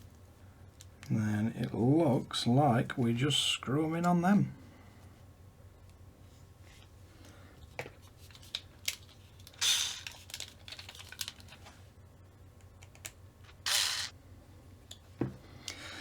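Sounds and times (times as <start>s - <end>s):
small screws and tools clicking: 12.8s - 14.1s.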